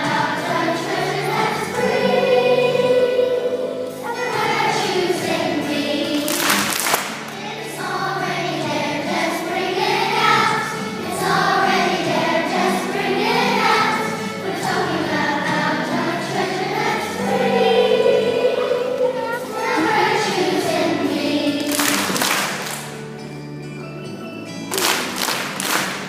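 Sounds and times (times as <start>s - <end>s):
children's choir singing: 0.0s - 23.1s, 24.7s - 26.0s
instrumental accompaniment: 0.0s - 26.0s.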